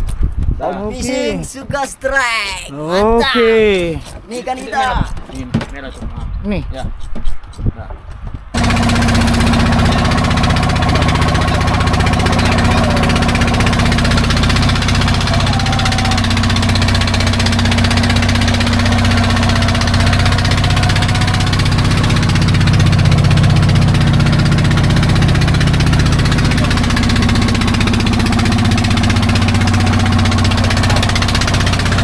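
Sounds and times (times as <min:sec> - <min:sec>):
boat engine running: 0:08.6 - 0:32.0.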